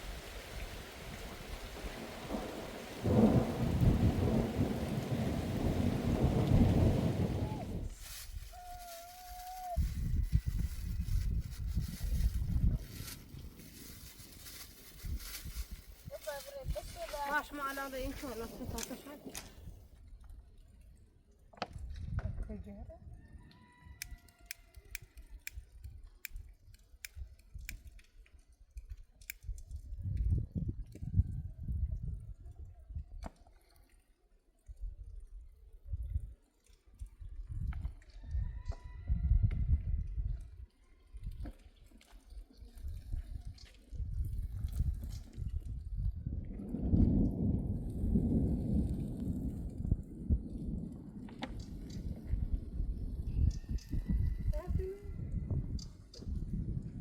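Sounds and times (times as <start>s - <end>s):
rain falling: 0.0s - 10.0s
thunder rumbling: 1.0s - 8.9s, 45.8s - 53.4s.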